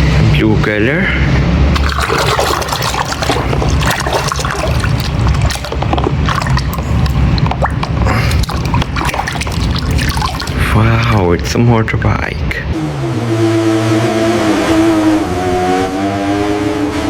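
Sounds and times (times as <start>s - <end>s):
water sloshing in a bucket: 1.7s - 11.2s.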